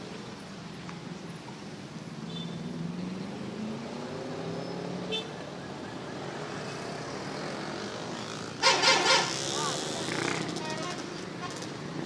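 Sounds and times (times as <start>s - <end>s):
buses passing: 4.6s - 12.0s.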